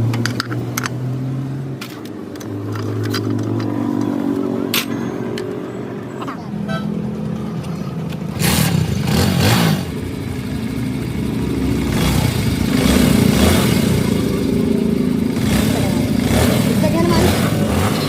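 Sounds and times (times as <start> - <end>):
motorcycle engine revving: 7.0 - 18.0.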